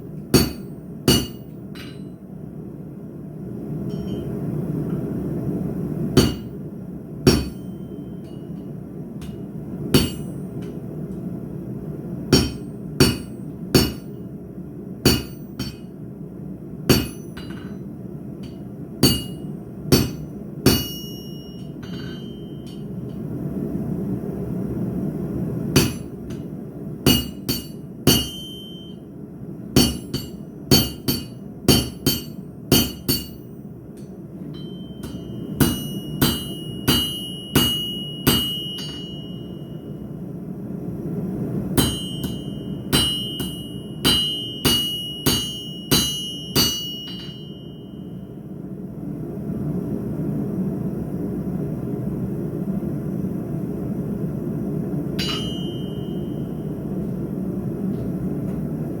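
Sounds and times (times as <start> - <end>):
steady low rumble: 0.0 - 59.0
hammer striking steel on anvil: 0.1 - 2.2, 3.8 - 4.4, 6.1 - 6.6, 7.2 - 10.8, 12.3 - 14.2, 15.0 - 16.0, 16.9 - 23.2, 25.7 - 29.0, 29.8 - 40.0, 41.7 - 48.3, 55.2 - 57.2.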